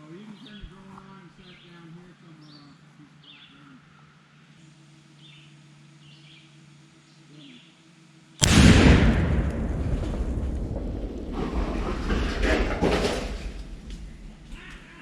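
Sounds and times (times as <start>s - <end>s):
steady low hum: 0.0s - 15.0s
faint bird chirps: 1.4s - 7.9s
loud explosion blast rumbling: 8.4s - 14.8s.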